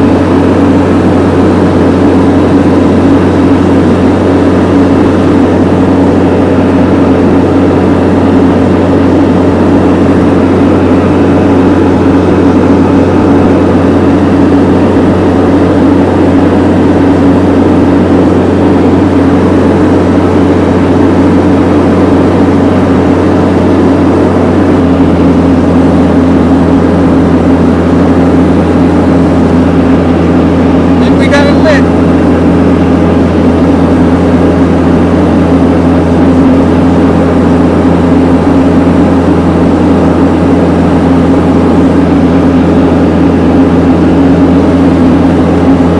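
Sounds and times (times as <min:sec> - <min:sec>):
heavy engine running: 0:00.0 - 0:45.9.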